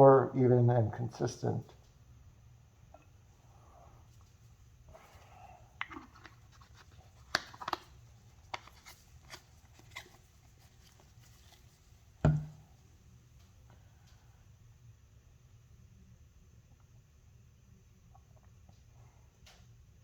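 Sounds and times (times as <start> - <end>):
object set down with knock: 12.2 - 12.6.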